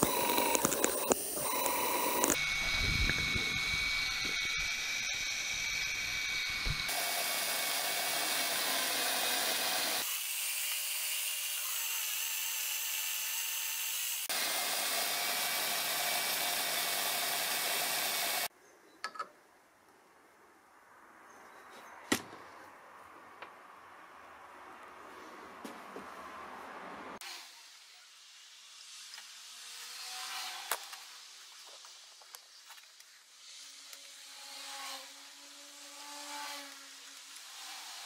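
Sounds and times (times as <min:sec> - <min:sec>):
power tool cutting steel: 0:00.0 - 0:18.5.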